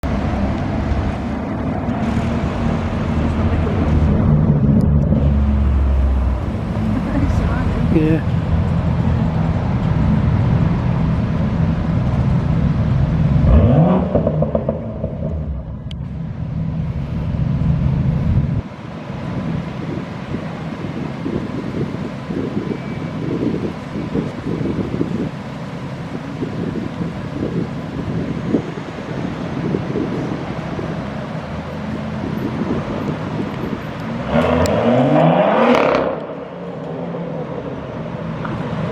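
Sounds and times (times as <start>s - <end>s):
car engine revving: 0.0s - 18.6s, 30.0s - 38.9s.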